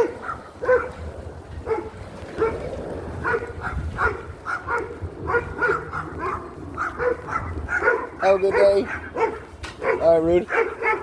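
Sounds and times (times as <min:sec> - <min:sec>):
dogs barking high-pitched: 0:00.0 - 0:11.0
low rumble: 0:01.0 - 0:07.7.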